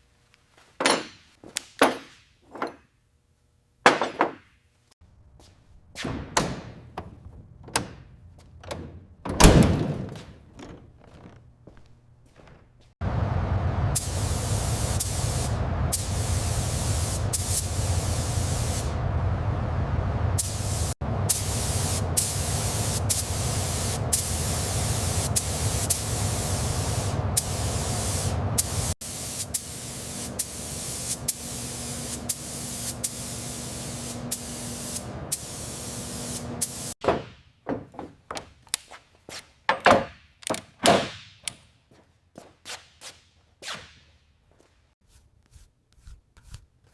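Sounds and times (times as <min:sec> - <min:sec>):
low hum: 0:13.0 - 0:22.1
loud spraying hiss: 0:14.0 - 0:19.0, 0:20.4 - 0:37.0.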